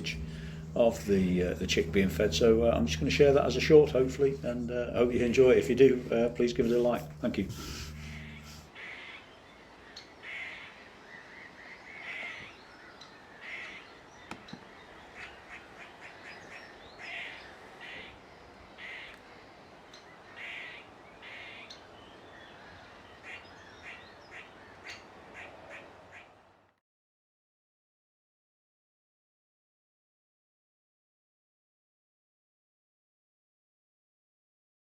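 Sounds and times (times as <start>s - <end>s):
woodpecker fledgling begging calls: 0.0s - 26.2s.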